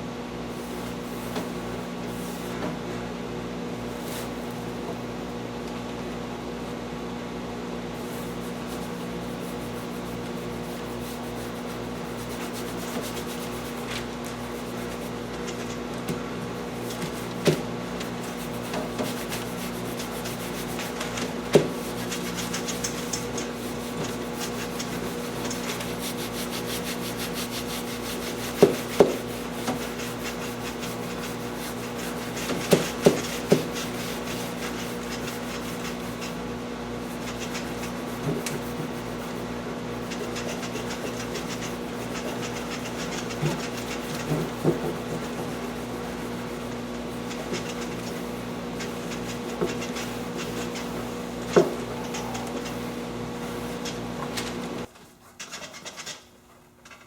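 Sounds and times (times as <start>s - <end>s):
steady hum: 0.0s - 54.9s
upholstery rubbed by hand: 3.8s - 4.8s, 8.0s - 15.3s, 16.5s - 52.4s.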